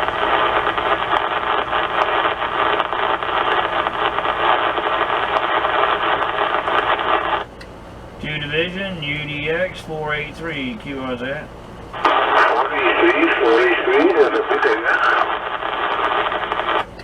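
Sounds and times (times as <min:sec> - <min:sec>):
faint crackle: 0:00.0 - 0:07.5, 0:12.0 - 0:16.9
radio static hiss: 0:00.0 - 0:07.6, 0:08.2 - 0:17.0.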